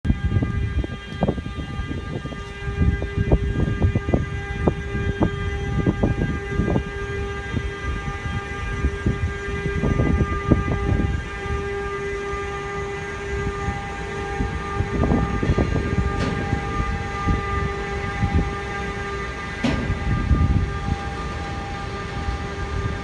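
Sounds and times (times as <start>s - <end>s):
electric locomotive whine: 0.1s - 23.0s
metallic knocks and clanks: 14.7s - 21.1s.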